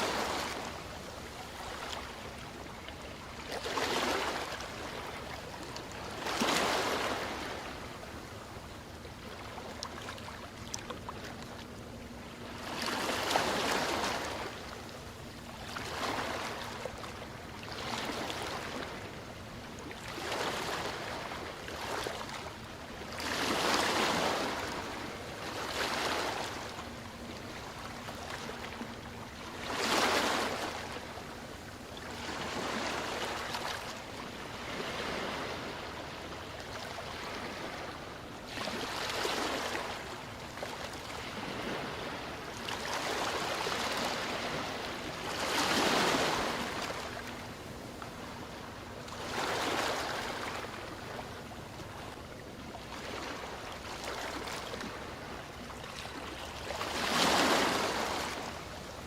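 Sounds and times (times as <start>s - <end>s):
ocean waves breaking: 0.0s - 8.2s, 9.2s - 59.0s
surf wash: 0.0s - 59.0s.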